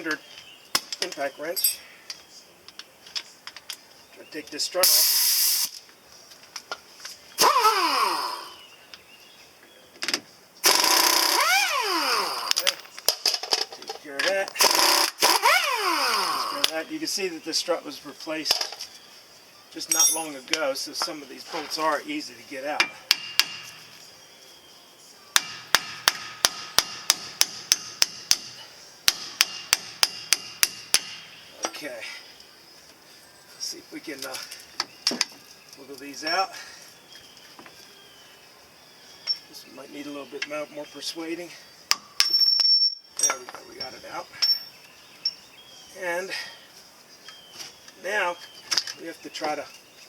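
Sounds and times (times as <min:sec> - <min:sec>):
impact wrench bursts: 0:07.4 - 0:08.6, 0:10.6 - 0:12.6, 0:14.6 - 0:16.6.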